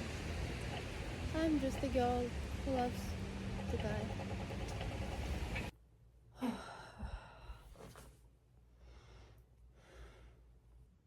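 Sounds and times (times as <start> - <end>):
outdoor low hum: 0.0 - 11.0
soft breathy sigh: 6.3 - 8.1
faint breaths: 6.4 - 10.6.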